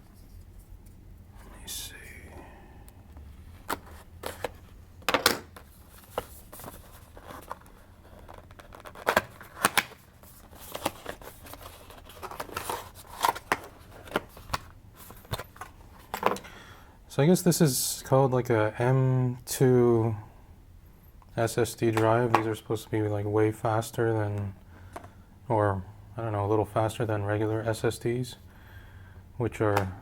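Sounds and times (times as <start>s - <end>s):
packaging clicks and crinkles: 3.6s - 16.5s.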